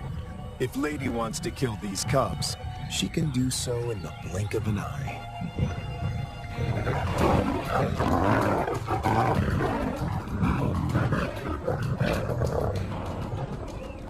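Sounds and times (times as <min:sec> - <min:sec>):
lions snarling and growling: 0:05.4 - 0:14.0.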